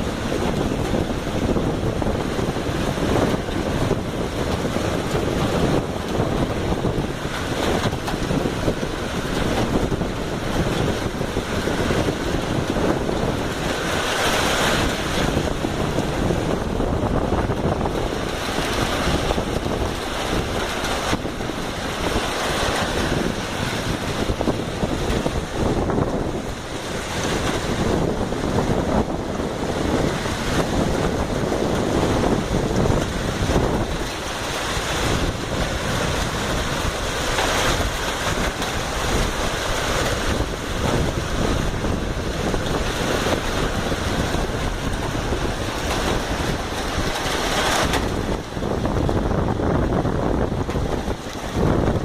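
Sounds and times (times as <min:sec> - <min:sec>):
hail and heavy rain pelting: 0:00.0 - 0:52.0.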